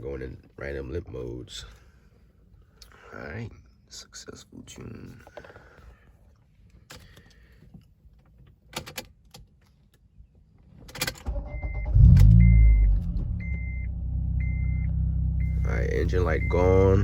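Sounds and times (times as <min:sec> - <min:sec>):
car engine starting and idling: 0:11.0 - 0:17.0.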